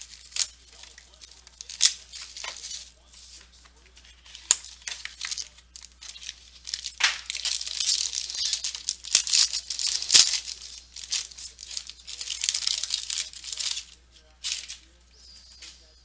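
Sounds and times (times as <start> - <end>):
packaging rustling and crinkling: 0.0 - 15.0
packaging tearing: 3.9 - 14.9.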